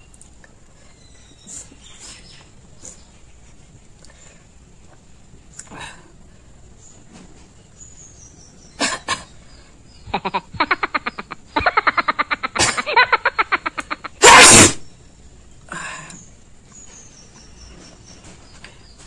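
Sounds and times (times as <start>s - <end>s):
person sneezing: 14.2s - 14.8s.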